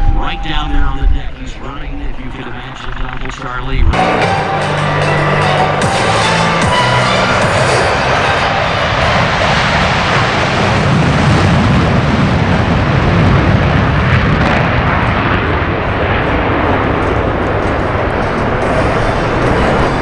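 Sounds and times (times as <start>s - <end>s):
aircraft engine noise: 0.0s - 20.0s.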